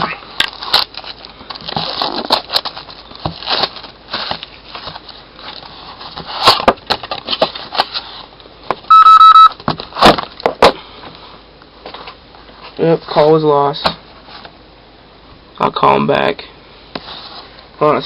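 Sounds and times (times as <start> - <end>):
wrapping crackling: 0.4 - 8.2
phone rapid electronic beeps: 8.9 - 9.5.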